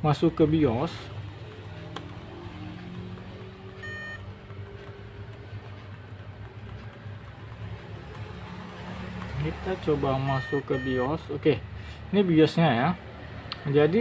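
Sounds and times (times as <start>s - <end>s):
short electronic beep: 3.8s - 4.3s, 10.3s - 11.1s.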